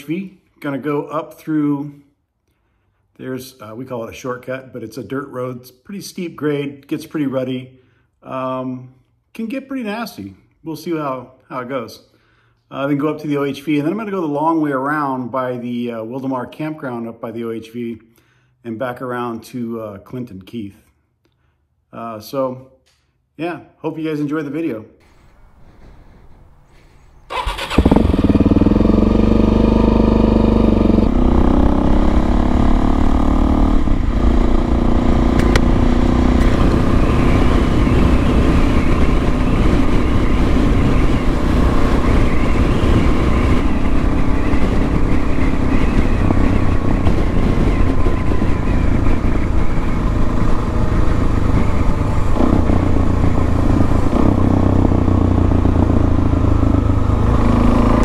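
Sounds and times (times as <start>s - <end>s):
motorcycle engine running: 27.3s - 58.0s.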